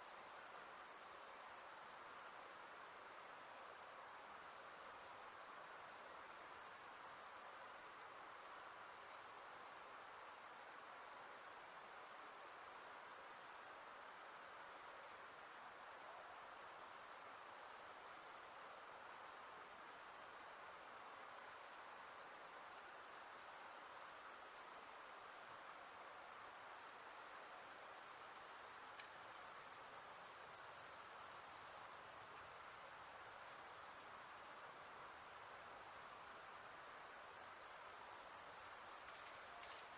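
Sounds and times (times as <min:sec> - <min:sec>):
faint low hiss: 0:00.0 - 0:39.9
insects trilling: 0:14.1 - 0:39.9.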